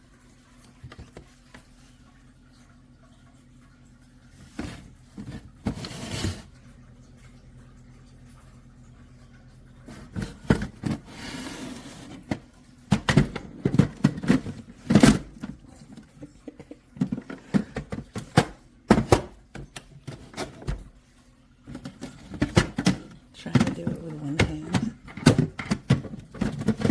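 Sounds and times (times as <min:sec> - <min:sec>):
plastic parts clicking and knocking: 0:21.7 - 0:26.9.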